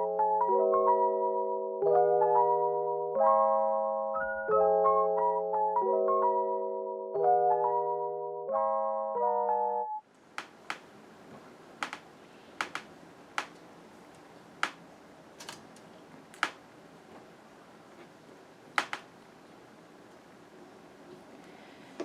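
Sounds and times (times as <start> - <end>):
faint hiss: 10.1 - 22.0
stationery clicks and taps: 10.4 - 10.9, 11.8 - 14.8, 15.4 - 16.6, 18.8 - 19.1.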